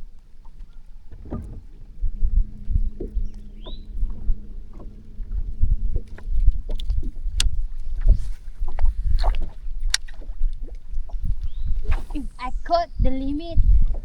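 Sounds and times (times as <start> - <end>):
water lapping against boat hull: 0.0 - 14.0
knocks and clicks: 1.1 - 7.6.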